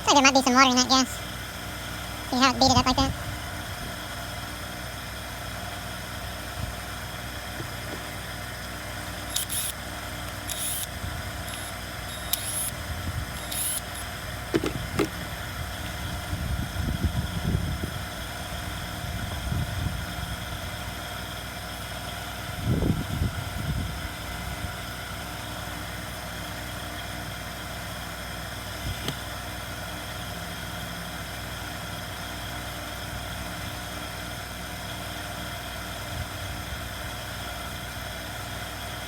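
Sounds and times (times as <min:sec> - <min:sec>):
steady background hum: 0:00.0 - 0:18.9
clicks: 0:09.3 - 0:09.7, 0:10.3 - 0:12.7, 0:13.4 - 0:15.2.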